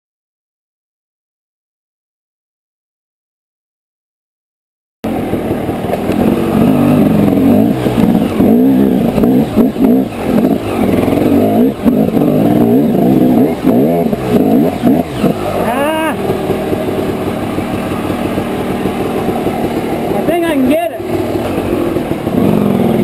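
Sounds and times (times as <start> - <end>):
dirt bike engine revving: 5.0 - 23.0.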